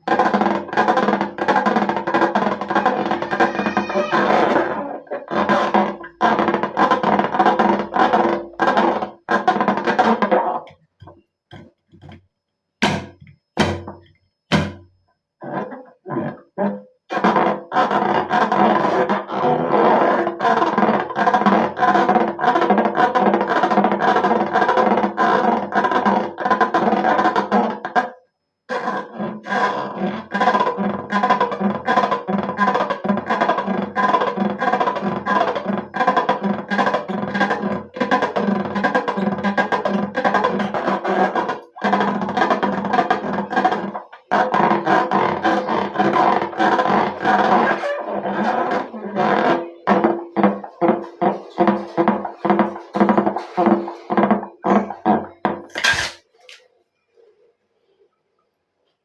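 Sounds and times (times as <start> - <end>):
music with steady beat: 12.8 - 15.0.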